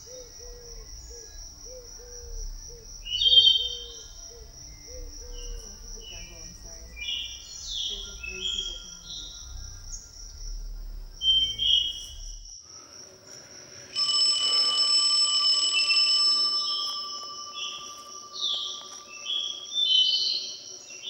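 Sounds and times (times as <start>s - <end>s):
birds chirping: 0.0s - 12.6s, 14.0s - 21.0s
high insect drone: 0.0s - 21.0s
loud held high pitches: 14.0s - 20.2s.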